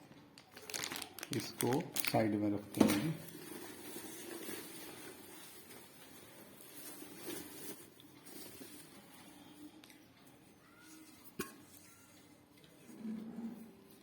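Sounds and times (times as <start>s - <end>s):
packaging handling noises: 0.4s - 10.0s.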